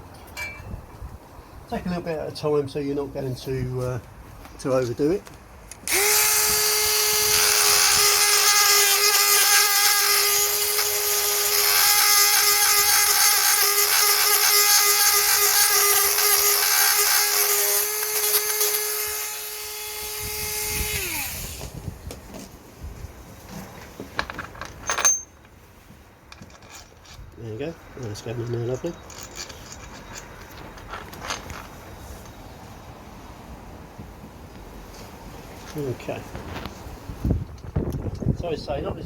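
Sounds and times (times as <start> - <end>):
rotary tool grinding plastic: 5.9 - 21.7
light scraping and handling: 21.5 - 32.8, 34.0 - 38.4.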